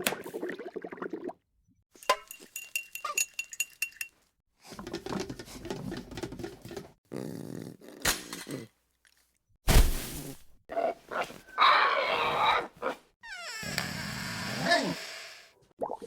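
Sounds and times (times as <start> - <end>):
dishes and cutlery clinking: 2.0 - 4.2.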